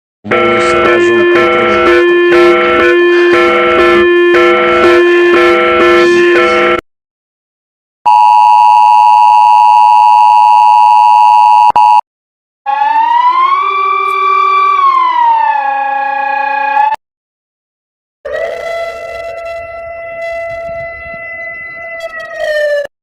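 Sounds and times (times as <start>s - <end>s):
siren-like alert tone: 0.3s - 6.8s, 12.7s - 17.0s, 18.3s - 22.9s
two-tone attention signal: 0.3s - 6.8s, 8.1s - 12.0s.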